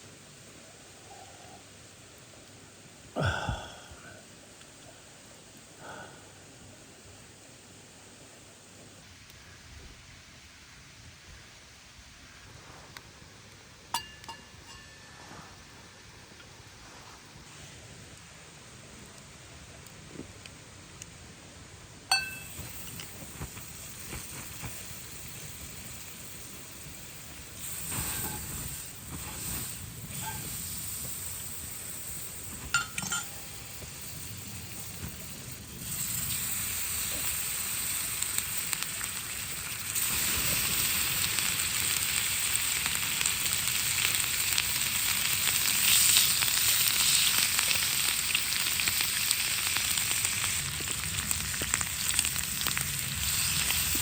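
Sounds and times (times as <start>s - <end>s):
ringing metal clink: 14.0s - 15.2s, 22.1s - 22.5s, 32.8s - 33.5s
food sizzling in iron pan: 22.1s - 54.0s.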